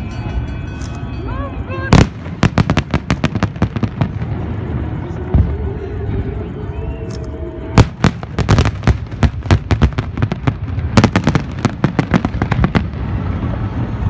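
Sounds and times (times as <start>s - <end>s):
low rumble: 0.0s - 14.0s
fireworks banging: 1.9s - 5.8s, 7.8s - 14.0s.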